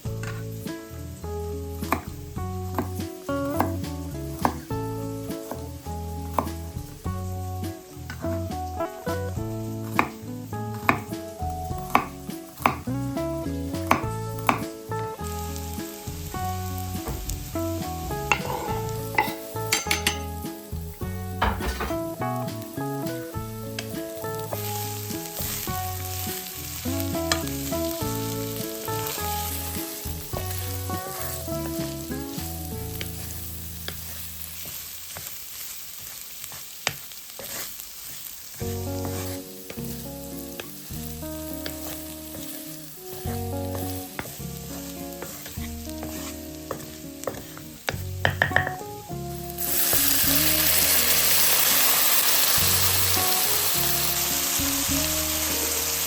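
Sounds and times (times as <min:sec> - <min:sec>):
background music: 0:00.0 - 0:34.2, 0:38.6 - 0:56.0
food frying in hot pan: 0:00.0 - 0:56.0.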